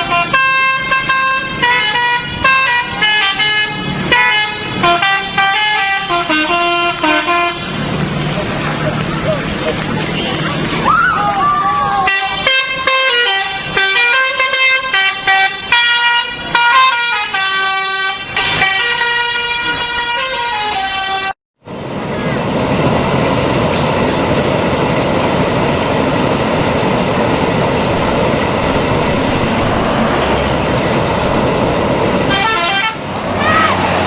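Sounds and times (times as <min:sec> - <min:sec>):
musical air horn tune: 0:00.0 - 0:07.6, 0:32.3 - 0:33.0
road and engine rumble: 0:00.0 - 0:34.0.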